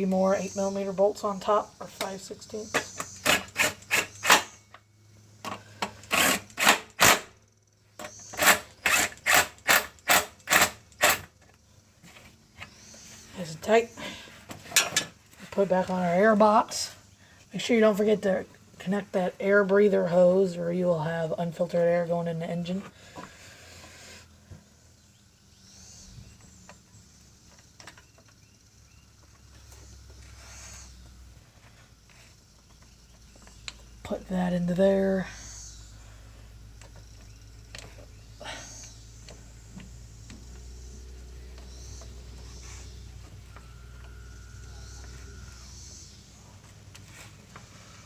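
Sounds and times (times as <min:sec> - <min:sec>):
low steady hum: 0:28.4 - 0:48.0.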